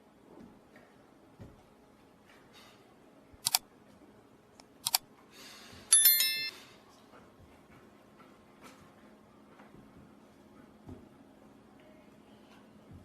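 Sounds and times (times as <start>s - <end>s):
sharp clicks: 3.4s - 3.6s, 4.6s - 5.0s
metallic ringing chime: 5.9s - 6.7s.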